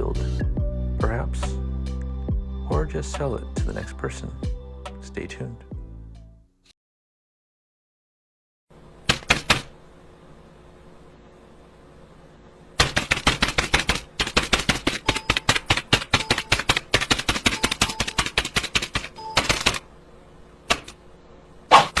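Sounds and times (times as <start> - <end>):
fast typing clicks: 9.1 - 9.7, 12.8 - 19.8.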